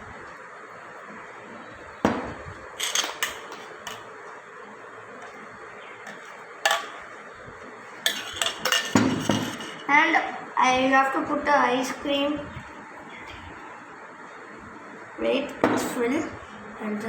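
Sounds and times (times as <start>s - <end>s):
dishes knocking and clinking: 2.1s - 4.1s, 6.1s - 7.0s, 8.0s - 9.9s.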